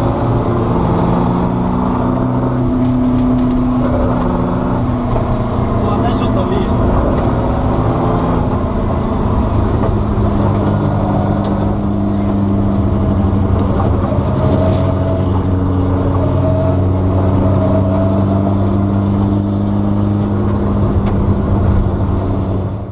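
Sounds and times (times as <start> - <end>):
car engine running steadily: 0.0 - 22.9.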